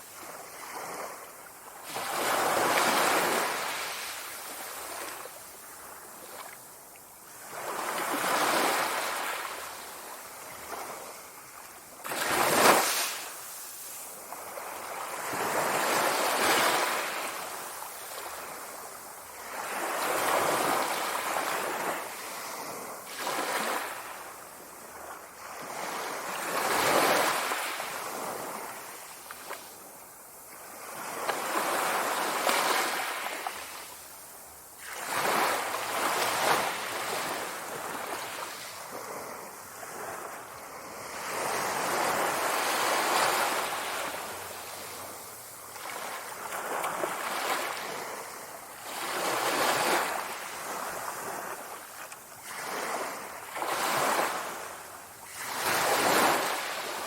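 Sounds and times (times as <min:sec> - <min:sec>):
sea waves washing onto shore: 0:00.0 - 0:57.0.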